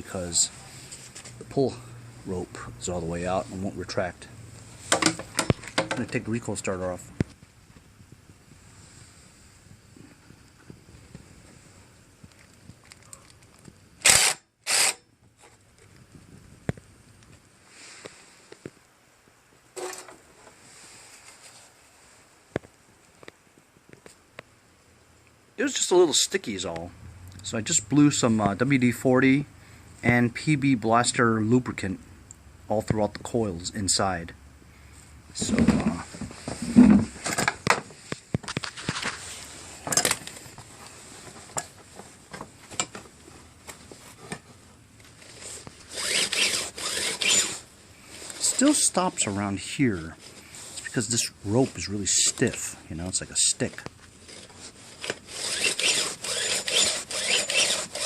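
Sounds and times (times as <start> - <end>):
starter rope rasping pulls: 45.2 - 49.0, 54.2 - 58.0.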